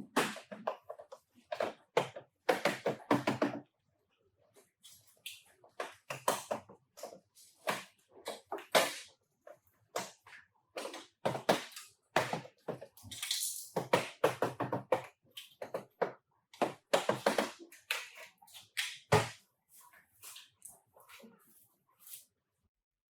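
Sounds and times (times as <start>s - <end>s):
irregular knocks and taps: 13.8s - 17.6s.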